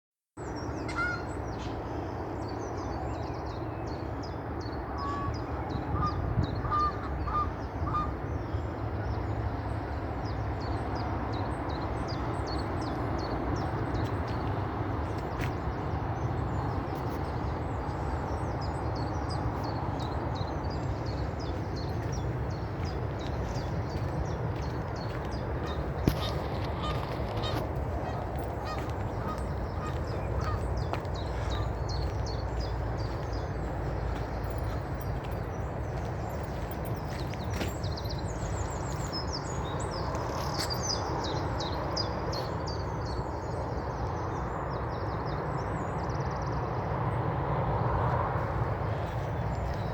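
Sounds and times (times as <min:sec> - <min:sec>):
birds chirping: 0:00.4 - 0:44.5
steady low rumble: 0:09.5 - 0:42.2.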